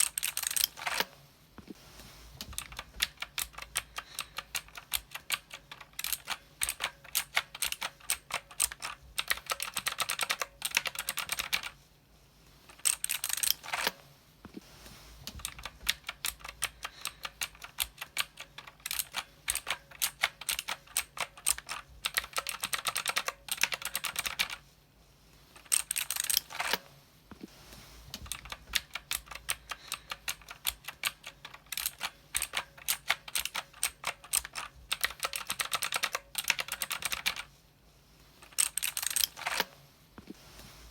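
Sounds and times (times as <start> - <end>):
mechanical keyboard typing: 0.0 - 1.1, 2.4 - 11.8, 12.7 - 14.0, 15.3 - 24.6, 25.6 - 26.8, 28.2 - 37.5, 38.4 - 39.7.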